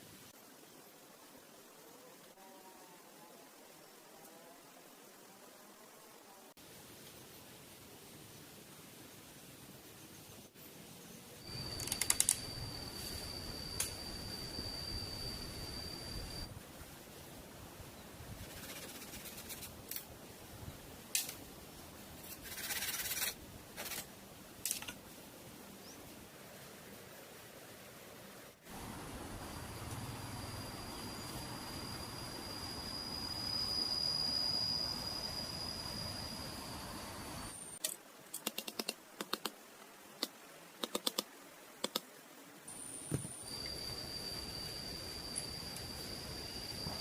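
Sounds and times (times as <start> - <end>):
faint steady background noise: 0.0 - 47.0
high insect drone: 11.4 - 16.5, 28.7 - 37.8, 42.7 - 47.0
sharp light clicks: 11.7 - 12.6.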